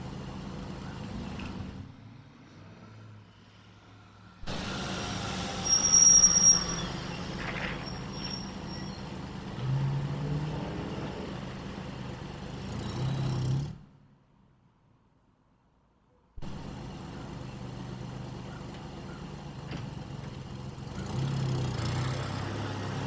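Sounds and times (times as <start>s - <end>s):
motor vehicle running: 0.0s - 2.6s, 4.4s - 13.9s, 16.4s - 23.0s
high-pitched squeal: 4.5s - 9.1s.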